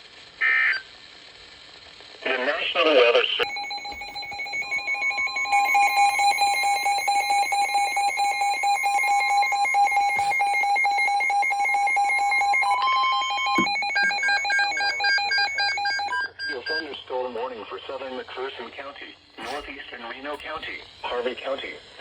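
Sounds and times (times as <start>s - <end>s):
two-tone alert signal: 3.4s - 16.2s
warbling data bursts: 3.4s - 16.2s.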